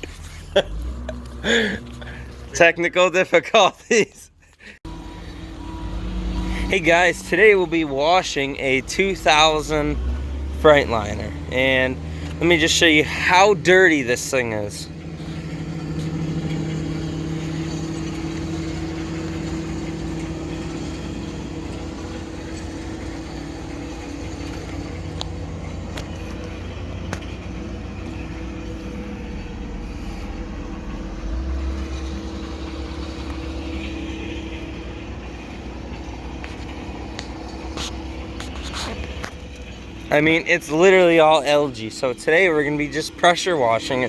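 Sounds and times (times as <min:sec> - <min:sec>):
engine idling: 0:00.0 - 0:03.3, 0:03.9 - 0:44.0
deep low rumble: 0:14.9 - 0:40.1.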